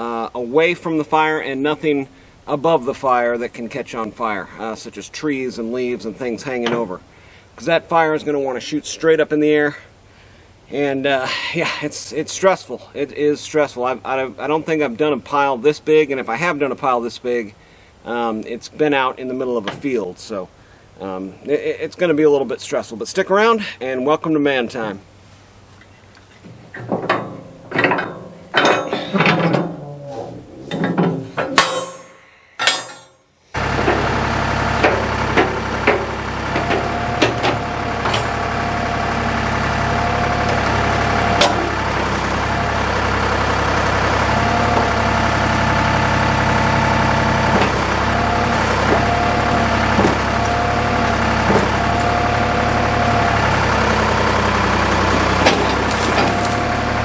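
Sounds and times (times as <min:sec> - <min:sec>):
clunks: 0:05.7 - 0:07.2, 0:25.8 - 0:57.0
engine whine: 0:25.0 - 0:29.6, 0:33.6 - 0:57.0
diesel engine running: 0:26.3 - 0:29.3, 0:33.6 - 0:57.0.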